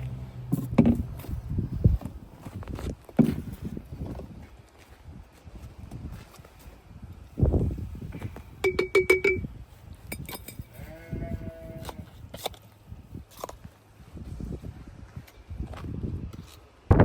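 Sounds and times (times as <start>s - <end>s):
sheep bleating: 10.7s - 12.1s.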